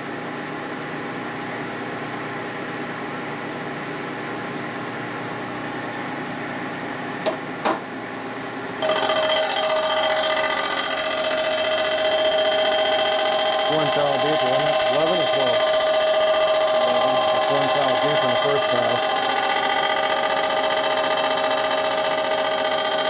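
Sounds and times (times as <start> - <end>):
machine tool running: 8.8 - 23.0
ringing metal cutting tone: 8.8 - 23.0.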